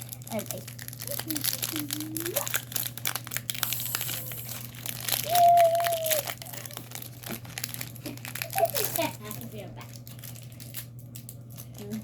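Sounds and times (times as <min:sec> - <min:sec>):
foil wrappers crinkling and tearing: 0:00.0 - 0:12.0.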